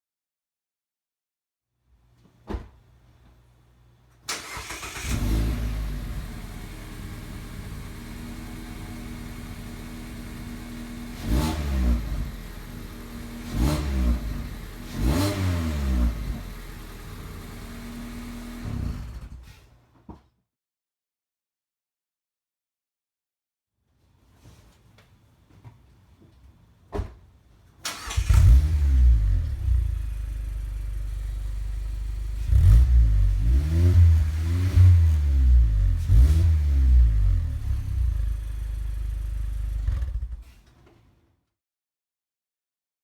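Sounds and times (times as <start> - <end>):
car engine starting and idling: 4.3 - 19.2, 27.8 - 40.6
engine revving: 4.3 - 19.3, 27.9 - 40.5.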